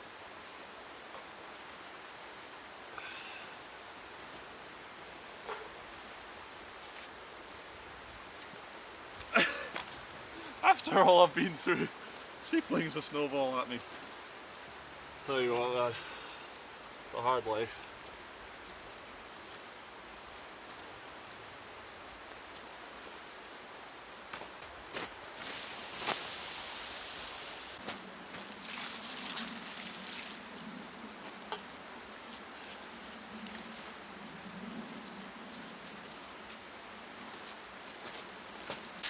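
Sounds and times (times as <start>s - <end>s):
river rushing: 9.3s - 17.3s.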